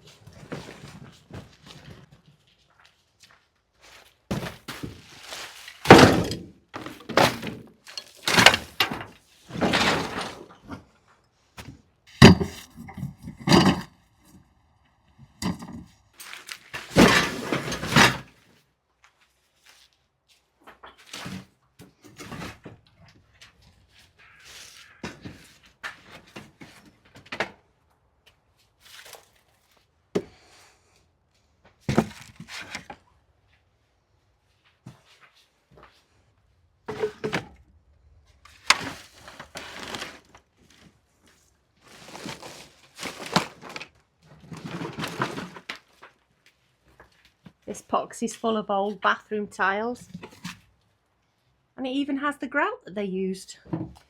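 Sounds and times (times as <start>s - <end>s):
debris clattering into a barrow: 4.3s - 10.8s, 12.1s - 13.9s, 15.4s - 18.4s, 41.8s - 46.1s.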